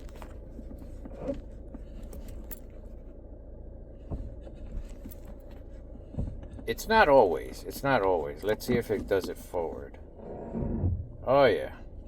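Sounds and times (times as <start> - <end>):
car idling: 0.0 - 12.0
light clicks and knocks: 8.0 - 10.0.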